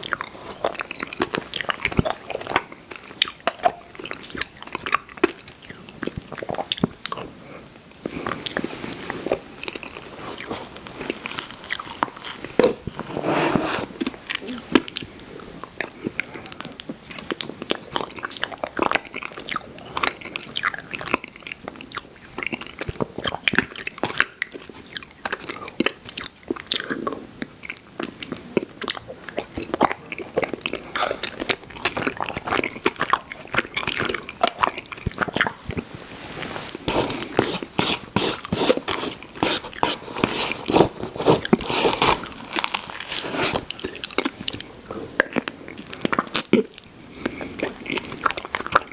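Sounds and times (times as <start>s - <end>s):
wet chewing: 27.6s - 35.9s, 36.7s - 48.9s
small crunches: 33.6s - 44.6s.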